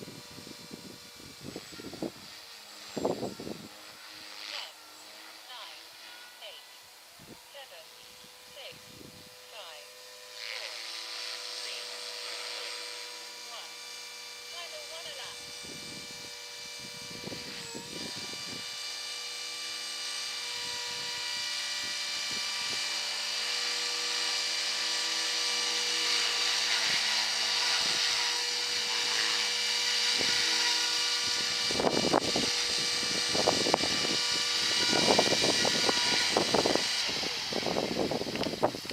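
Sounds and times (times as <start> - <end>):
wind buffeting microphone: 0.0 - 3.9, 31.2 - 38.9
electric rc helicopter whine: 0.0 - 38.9.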